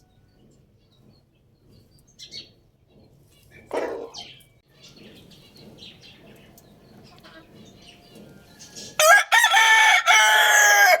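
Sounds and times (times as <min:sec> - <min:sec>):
small birds chirping: 0:00.0 - 0:09.0
rooster crowing: 0:09.0 - 0:11.0.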